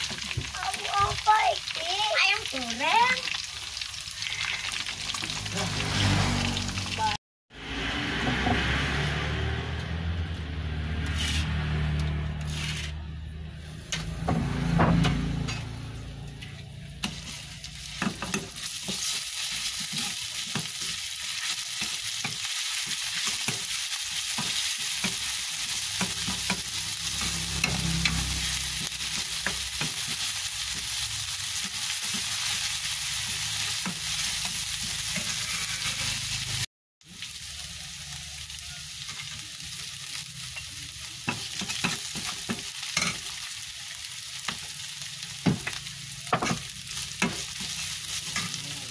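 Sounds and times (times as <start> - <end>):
food sizzling in hot oil: 0.0 - 12.9, 13.6 - 48.9
spatula scraping a pan: 11.0 - 11.6, 12.4 - 13.0, 16.4 - 30.2, 33.2 - 36.4.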